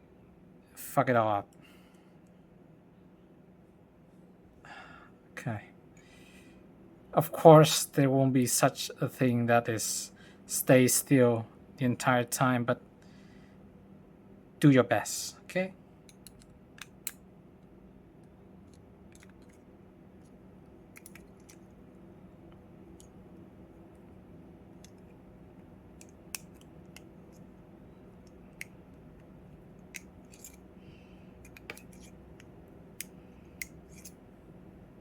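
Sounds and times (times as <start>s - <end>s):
faint steady hum: 0.0s - 35.0s
metallic clicks of knife parts: 21.0s - 21.7s, 28.2s - 30.6s, 31.4s - 34.2s.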